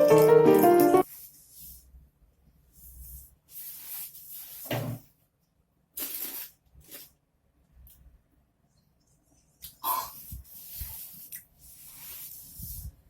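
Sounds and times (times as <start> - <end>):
piano music: 0.0 - 1.1.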